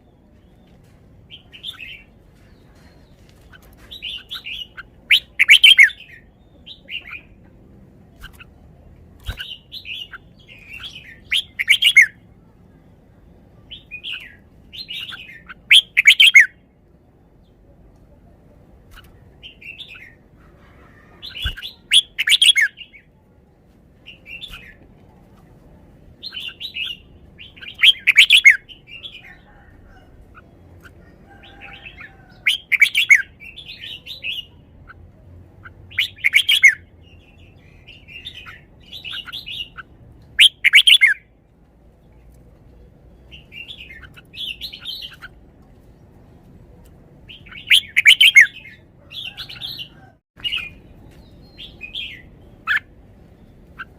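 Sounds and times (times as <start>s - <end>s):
bird singing loud phrases: 4.0s - 7.4s, 9.3s - 12.2s, 13.6s - 16.6s, 21.1s - 23.1s, 26.2s - 29.7s, 30.4s - 35.0s, 35.6s - 41.2s, 43.1s - 45.3s, 47.3s - 53.9s.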